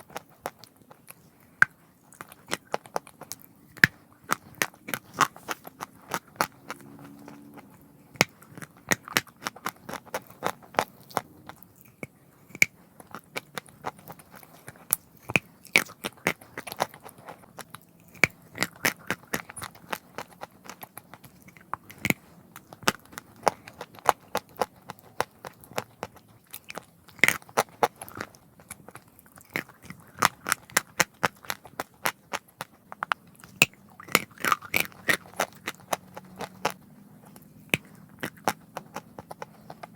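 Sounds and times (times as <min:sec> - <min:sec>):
person crunching chalk: 0:00.1 - 0:39.9.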